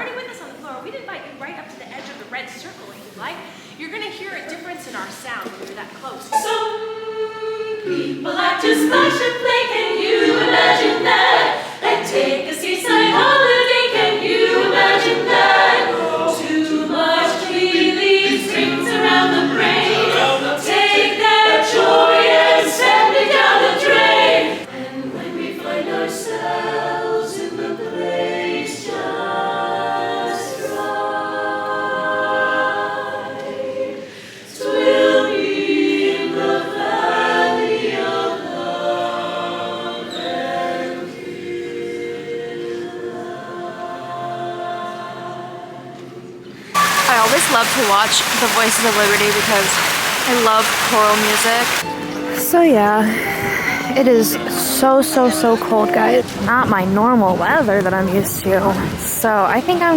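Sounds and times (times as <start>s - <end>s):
a cappella choir singing: 6.0s - 52.4s.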